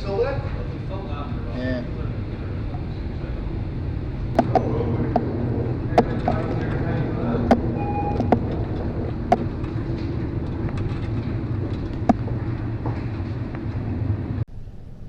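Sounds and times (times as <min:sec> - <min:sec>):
low machinery drone: 0:00.0 - 0:15.0
sharp knocks: 0:09.2 - 0:09.8.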